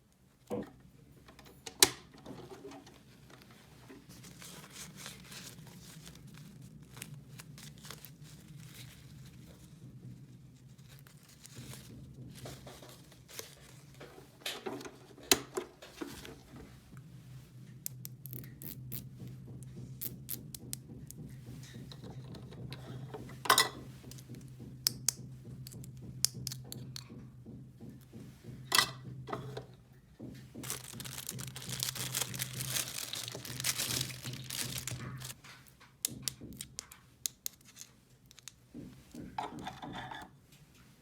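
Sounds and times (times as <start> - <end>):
crinkling rustle: 2.6 - 9.8, 30.6 - 35.7, 36.8 - 38.6
handling clicks and taps: 23.7 - 29.8.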